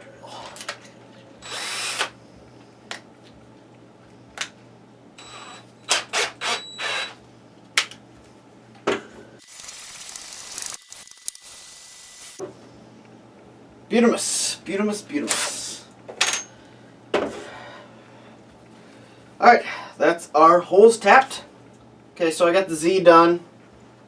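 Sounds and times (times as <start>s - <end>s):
power drill driving a tap: 1.4s - 2.1s, 5.2s - 7.2s.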